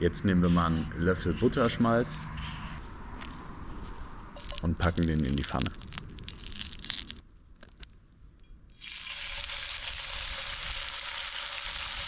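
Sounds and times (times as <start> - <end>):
steaks sizzling in butter: 8.8 - 12.0.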